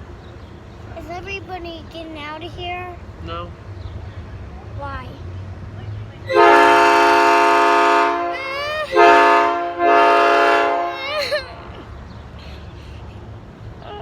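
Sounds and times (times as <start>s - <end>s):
train horn blasts: 6.3s - 11.0s.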